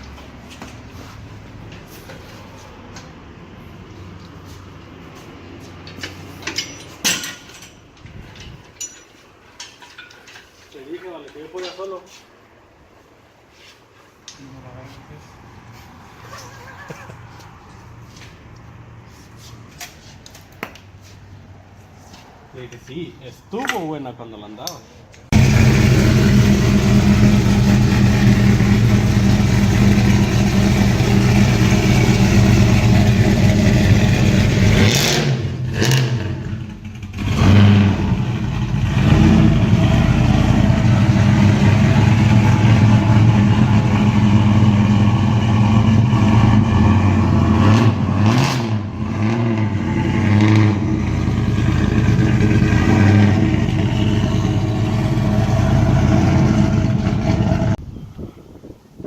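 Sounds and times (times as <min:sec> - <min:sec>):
vehicle engine running: 0:25.3 - 0:35.0, 0:38.0 - 0:47.8, 0:48.9 - 0:57.8.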